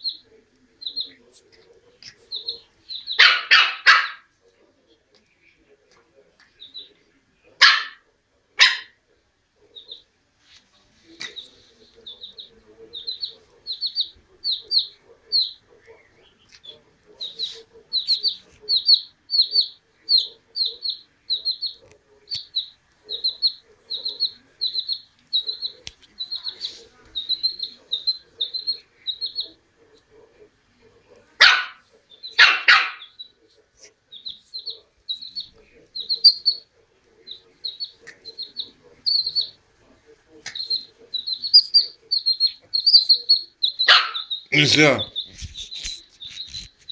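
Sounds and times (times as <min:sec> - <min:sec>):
chick peeping: 0:00.0 - 0:46.9
puppy barks: 0:03.1 - 0:04.3, 0:07.6 - 0:08.0, 0:08.6 - 0:09.0, 0:31.4 - 0:33.2, 0:43.8 - 0:44.7.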